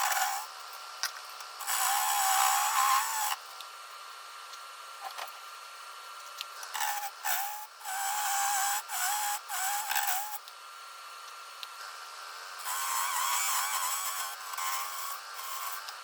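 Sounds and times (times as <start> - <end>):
wood lathe whining: 1.6 - 3.4, 12.6 - 16.0
turning tool rasping on wood: 12.6 - 16.0.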